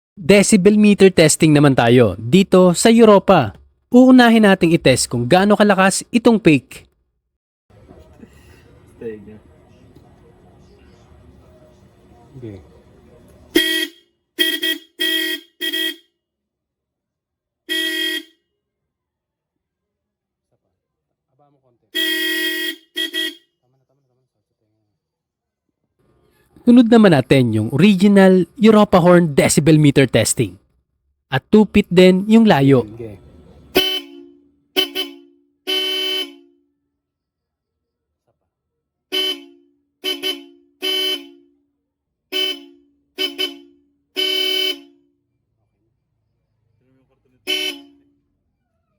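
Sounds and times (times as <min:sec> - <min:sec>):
car horn toots: 0:13.5 - 0:16.0, 0:17.7 - 0:18.3, 0:22.0 - 0:23.5, 0:33.7 - 0:36.7, 0:39.1 - 0:41.6, 0:42.3 - 0:45.1, 0:47.5 - 0:48.1.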